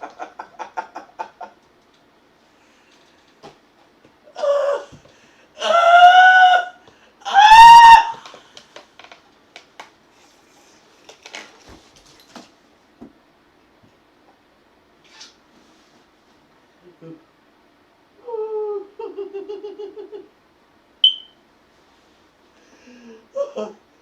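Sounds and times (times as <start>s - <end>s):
high-pitched vocal shrieks: 5.6s - 8.3s.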